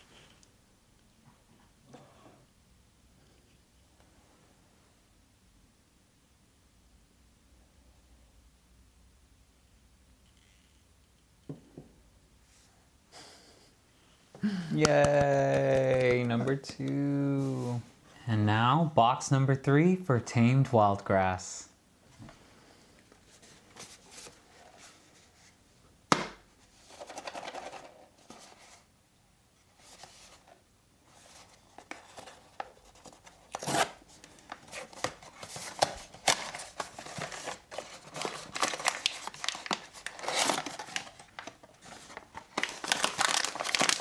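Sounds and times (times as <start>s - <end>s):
packaging crinkling and tearing: 31.8s - 44.0s.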